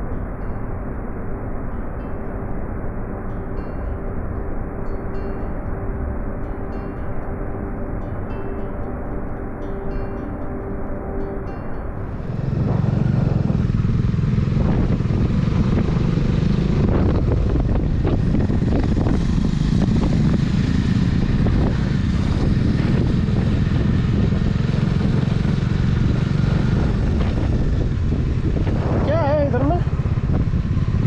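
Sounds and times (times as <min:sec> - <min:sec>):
motorcycle engine running: 0:11.9 - 0:31.0.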